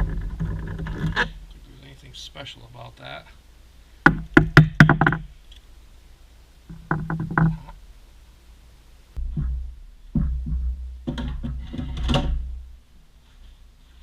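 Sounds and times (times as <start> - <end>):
handling thumps and rumbling: 0.0 - 1.7, 4.1 - 5.3, 6.7 - 7.9, 9.2 - 12.8.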